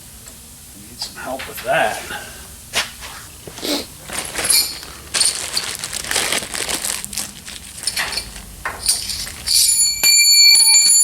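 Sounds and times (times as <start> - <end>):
crinkling handling noise: 1.3 - 9.7.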